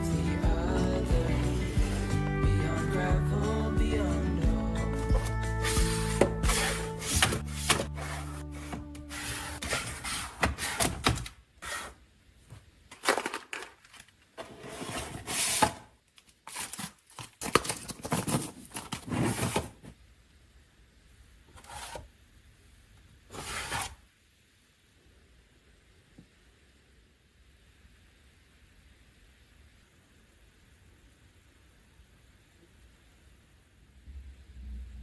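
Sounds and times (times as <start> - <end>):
background music: 0.0 - 9.6
handling rustling and scraping: 5.1 - 12.0, 12.9 - 20.0, 21.5 - 22.1, 23.3 - 24.0.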